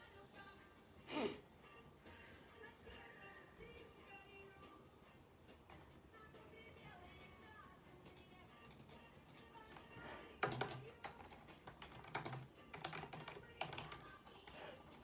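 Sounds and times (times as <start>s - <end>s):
typing on computer keyboard: 8.0s - 15.0s.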